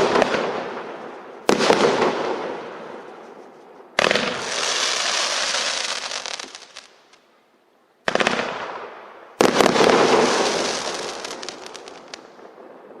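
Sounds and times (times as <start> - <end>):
dense firework crackling: 0.0 - 7.2, 8.1 - 13.0
fireworks shots: 0.0 - 7.2, 8.0 - 13.0.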